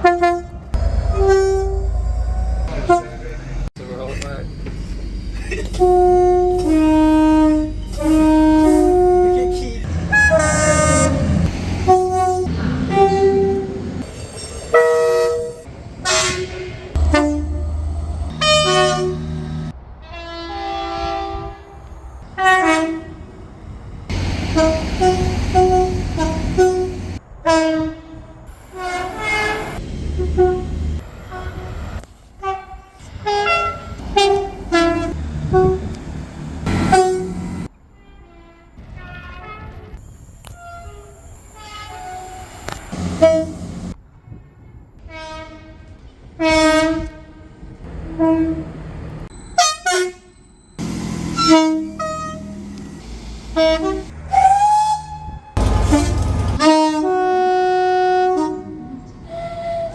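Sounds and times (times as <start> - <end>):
train horn blasts: 0.0 - 3.6, 5.8 - 14.1, 14.7 - 23.4, 24.1 - 48.8, 49.6 - 59.9
low rumble: 0.5 - 14.5, 17.0 - 32.1.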